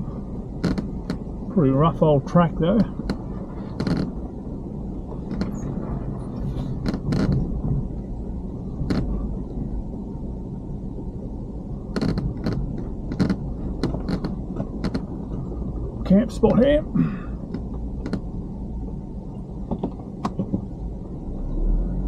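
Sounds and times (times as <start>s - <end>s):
vehicle engine rumble: 0.0s - 22.0s
knocks and rattles of bumping: 11.9s - 15.1s.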